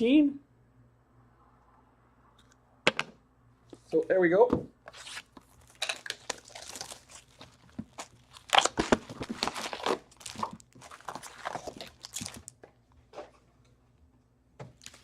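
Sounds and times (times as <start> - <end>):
plastic wrapping tearing and crinkling: 4.9 - 12.6, 14.8 - 15.0.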